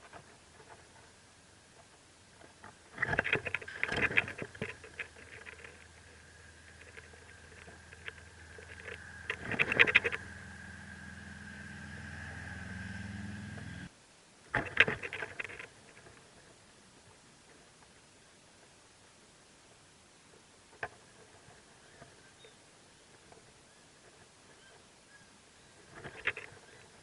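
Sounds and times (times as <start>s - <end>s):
mechanical hum with high tone: 0.0s - 17.4s
scratching and rustling in nest: 1.9s - 11.2s.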